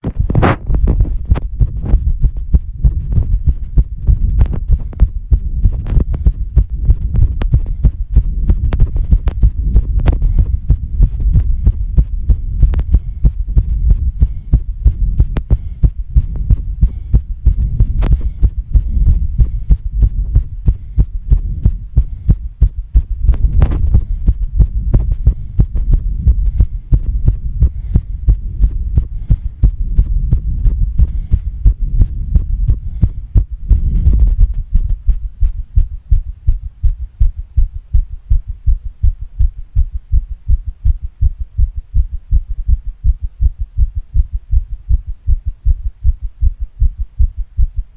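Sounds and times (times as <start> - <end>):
fast heartbeat thudding: 0.0 - 47.9
heavy breathing: 2.9 - 35.0.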